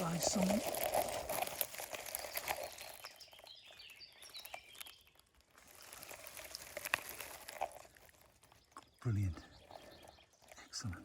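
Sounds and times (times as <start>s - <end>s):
brambles rustling: 0.0s - 10.8s
faint high bird chirps: 2.0s - 5.4s.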